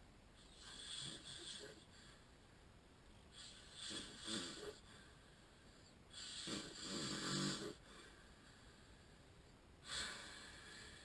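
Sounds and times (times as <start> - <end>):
man snoring: 3.7 - 4.8, 6.2 - 7.8.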